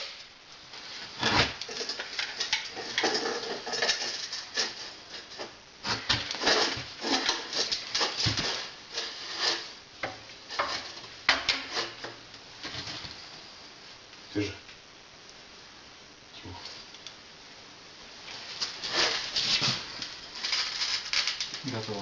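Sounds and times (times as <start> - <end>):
parts knocking and scraping: 1.3 - 13.0.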